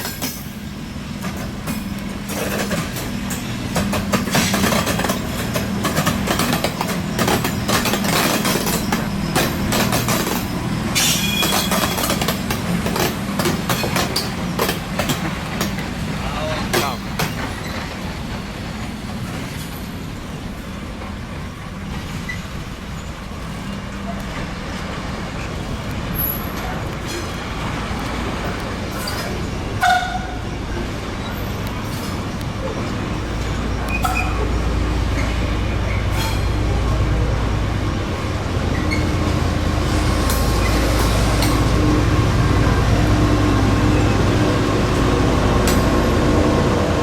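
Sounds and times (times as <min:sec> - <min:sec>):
electric locomotive running: 0:00.0 - 0:47.0
low train hum: 0:00.0 - 0:47.0
train wheels clattering on rails: 0:00.0 - 0:47.0
wheel squeal: 0:06.4 - 0:12.4, 0:38.7 - 0:39.4.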